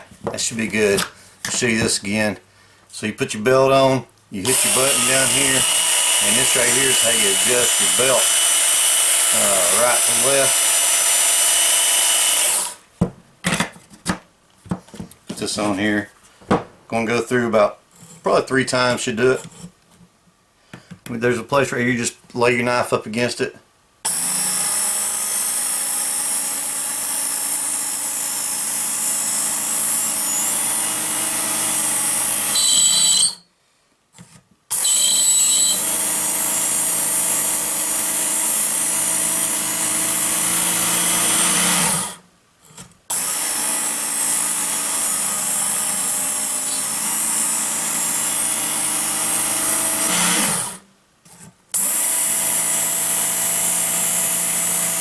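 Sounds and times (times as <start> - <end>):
belt knife sharpener running: 4.4 - 12.8, 24.1 - 33.4, 34.7 - 42.2, 43.1 - 50.8, 51.8 - 55.0.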